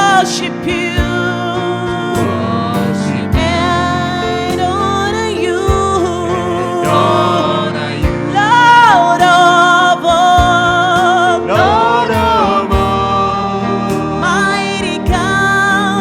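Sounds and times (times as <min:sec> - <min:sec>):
band playing: 0:02.0 - 0:09.5, 0:10.4 - 0:16.0
drum hits: 0:11.6 - 0:13.2.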